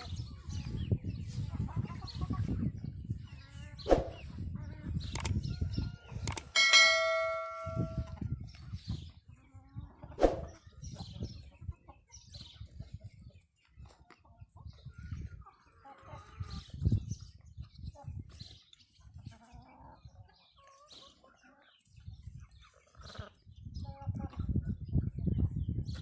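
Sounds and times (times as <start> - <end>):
chickens clucking: 0.0 - 26.0
metallic ringing tone: 6.6 - 8.2.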